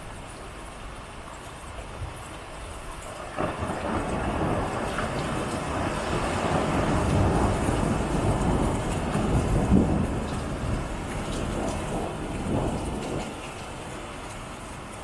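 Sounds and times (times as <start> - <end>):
steady rain: 0.0 - 15.0
thunder rumbling: 3.3 - 14.6.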